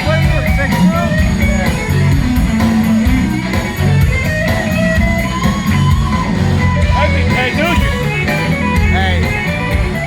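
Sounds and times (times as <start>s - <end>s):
bass: 0.0s - 10.0s
drums: 0.0s - 10.0s
electric guitar lead lines: 0.0s - 10.0s.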